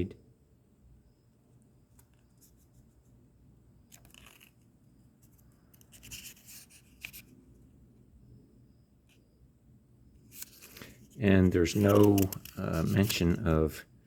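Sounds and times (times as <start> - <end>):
paper rustling: 10.3 - 11.0, 11.6 - 13.4.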